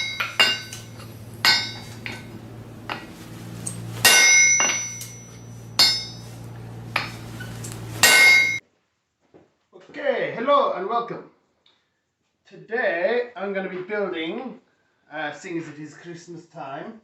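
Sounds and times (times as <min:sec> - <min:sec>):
hammer striking metal: 0:00.0 - 0:08.6
steady low hum: 0:00.0 - 0:08.6.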